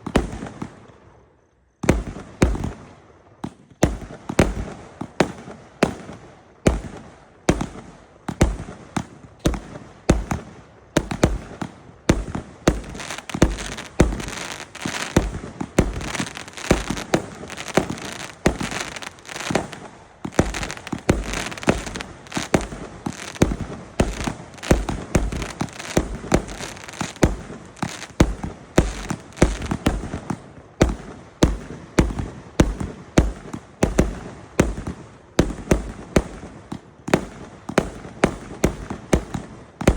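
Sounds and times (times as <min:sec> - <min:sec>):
firework bangs: 0:01.8 - 0:39.9
firework crackling: 0:08.4 - 0:39.9.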